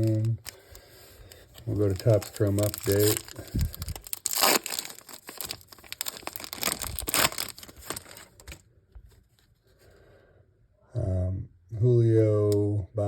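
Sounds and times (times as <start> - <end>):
card pack wrapper tearing and crinkling: 0.0 - 8.6.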